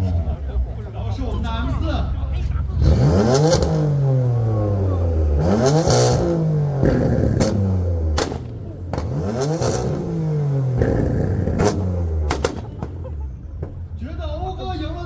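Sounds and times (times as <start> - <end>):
car engine revving: 0.0 - 15.0
exhaust pops: 2.4 - 15.0.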